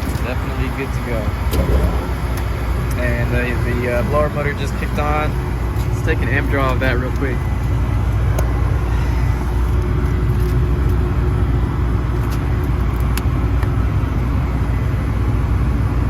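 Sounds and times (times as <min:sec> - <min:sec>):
blower motor hum and whoosh: 0:00.0 - 0:12.0.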